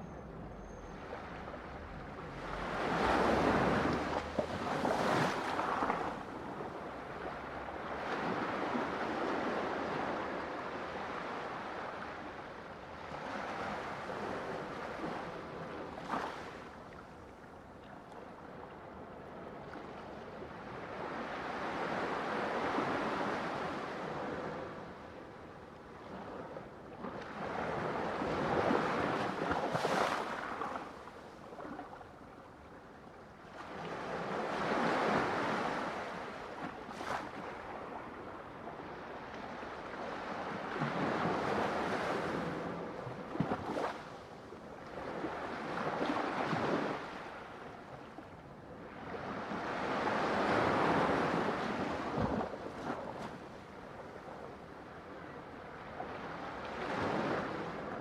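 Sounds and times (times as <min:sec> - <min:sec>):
ocean waves breaking: 0:00.0 - 0:10.0
splashes in the surf: 0:02.4 - 0:06.4, 0:27.2 - 0:31.9.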